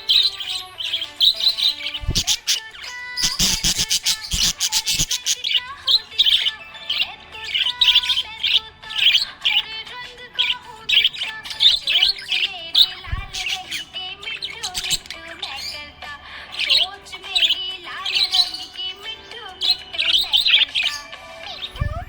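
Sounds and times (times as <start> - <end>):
budgerigars chirping: 0.0 - 22.0
background music: 15.0 - 22.0.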